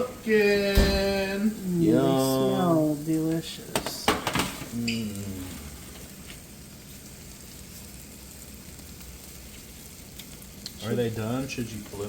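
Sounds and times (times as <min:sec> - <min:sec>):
food sizzling in a pan: 0:00.0 - 0:12.0.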